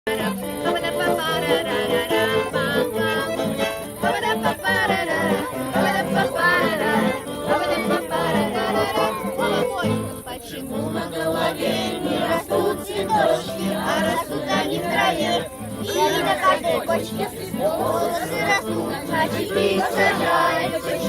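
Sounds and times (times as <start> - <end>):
children's song instrumental: 0.1 - 21.0.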